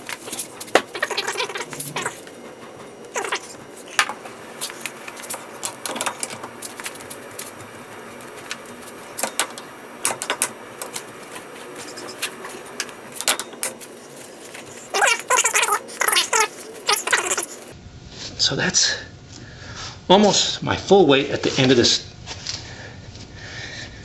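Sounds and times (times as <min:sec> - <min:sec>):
short squeaks: 0:00.0 - 0:07.6, 0:08.9 - 0:17.7
hand tools clicking on metal: 0:00.0 - 0:17.7.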